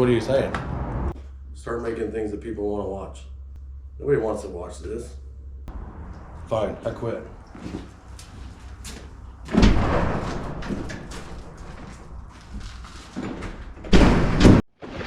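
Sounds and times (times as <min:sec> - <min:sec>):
loud bangs: 0:05.7 - 0:12.6
knocks and clatter: 0:07.3 - 0:15.0
loud thud: 0:09.5 - 0:12.2, 0:13.9 - 0:15.0.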